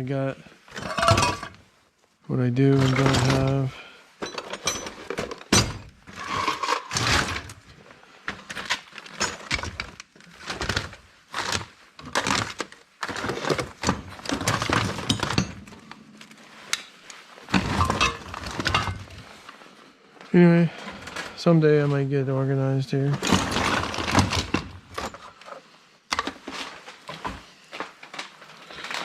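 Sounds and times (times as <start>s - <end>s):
hand tools clattering: 0.8s - 1.6s, 2.8s - 7.4s, 12.2s - 15.9s, 16.7s - 19.1s.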